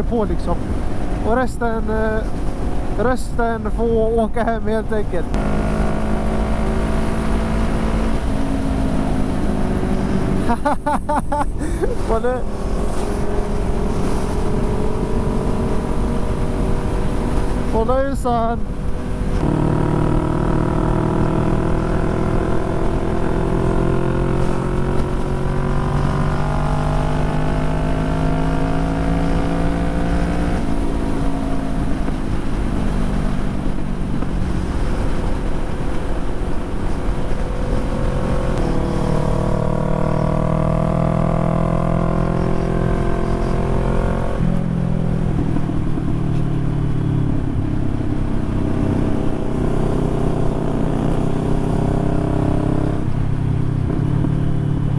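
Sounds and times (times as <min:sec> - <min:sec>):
motorcycle engine running: 0:05.3 - 0:54.9.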